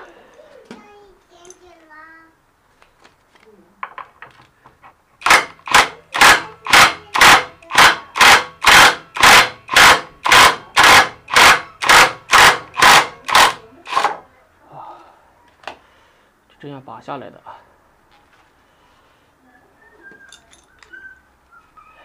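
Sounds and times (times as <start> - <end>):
hand tool repeated strokes: 5.2 - 14.2.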